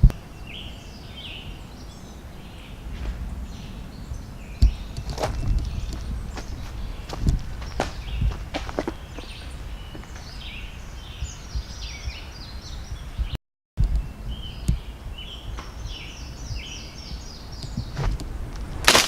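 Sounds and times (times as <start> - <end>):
low outdoor rumble: 0.0 - 13.2, 13.8 - 19.0
songbird singing: 0.0 - 18.9.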